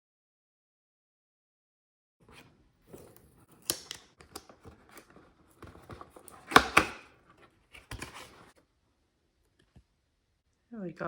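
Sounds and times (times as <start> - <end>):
paper and plastic rustling: 2.3 - 8.6.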